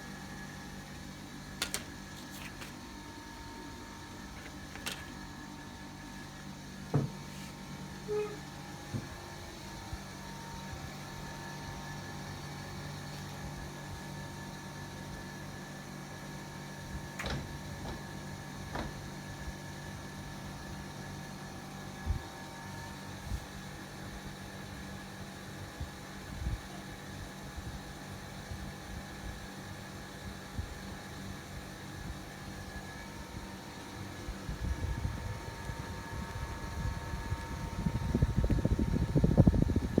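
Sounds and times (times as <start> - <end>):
ceiling fan motor hum: 0.0 - 40.0.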